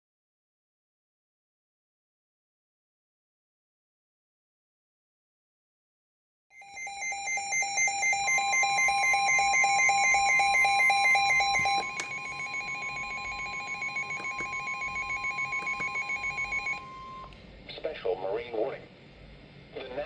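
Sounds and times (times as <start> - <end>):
pulsing electronic beep alarm: 6.5 - 17.3
steady alarm tone: 6.5 - 17.4.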